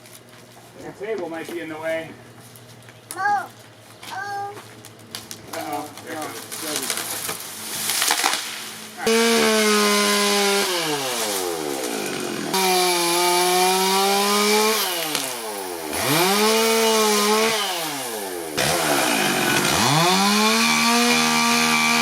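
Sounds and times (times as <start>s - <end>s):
chainsaw cutting tree: 5.0s - 22.0s.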